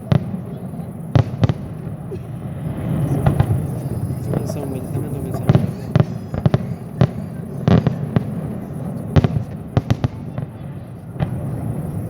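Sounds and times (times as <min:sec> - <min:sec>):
fireworks bursting with sharp bangs: 0:00.0 - 0:12.0.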